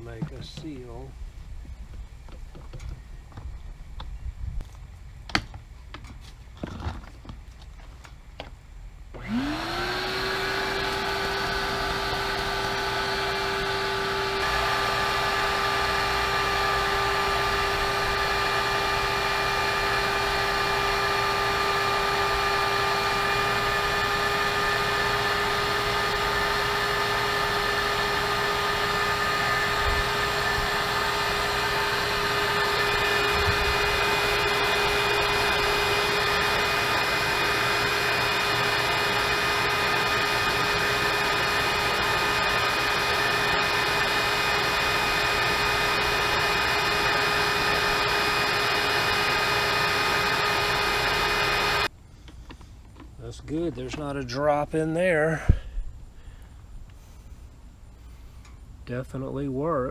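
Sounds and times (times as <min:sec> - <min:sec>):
shop vacuum motor whining: 0:09.1 - 0:51.9.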